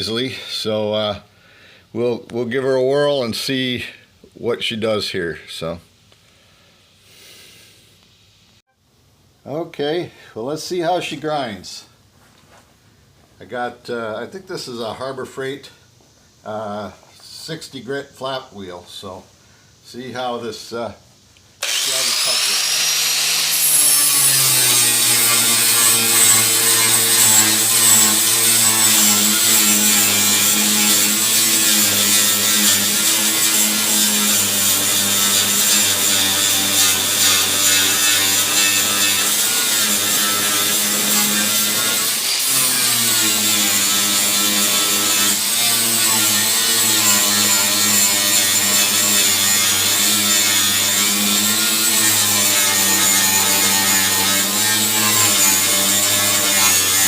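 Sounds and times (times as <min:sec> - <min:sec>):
grinder grinding metal: 0:21.6 - 0:57.0.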